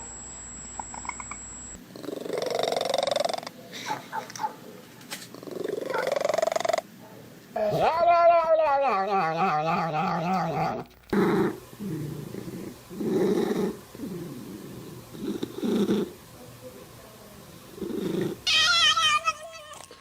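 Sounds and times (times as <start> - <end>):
cat low rumbling vocalizations: 9.4 - 16.4, 17.6 - 18.5
cat meowing: 18.4 - 20.0.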